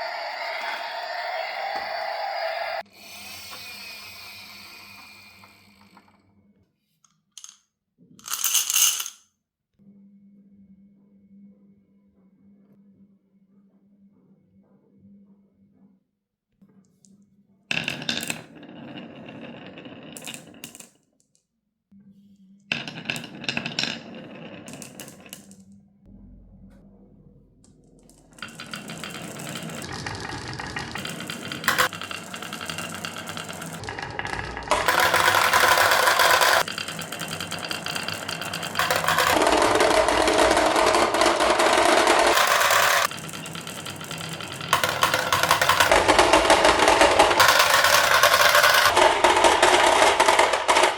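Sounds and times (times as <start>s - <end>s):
marbles rolling rattle: 0.0s - 2.8s, 8.2s - 9.2s, 17.7s - 20.9s, 22.8s - 25.6s, 28.0s - 50.9s
marbles clattering on wooden run: 7.4s - 7.6s, 8.2s - 9.2s, 17.7s - 20.9s, 22.7s - 25.6s, 28.1s - 50.9s.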